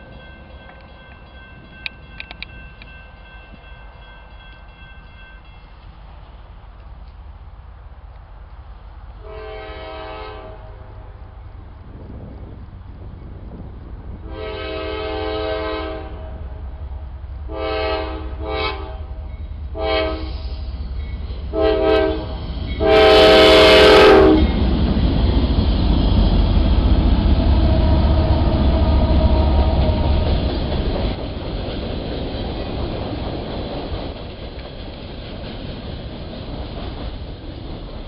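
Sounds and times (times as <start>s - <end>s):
train rumbling past: 0.0s - 38.0s
locomotive air horn blasts: 9.2s - 11.0s, 14.2s - 16.6s, 17.5s - 20.8s, 21.5s - 24.6s
wheels clacking over rail joints: 24.4s - 38.0s.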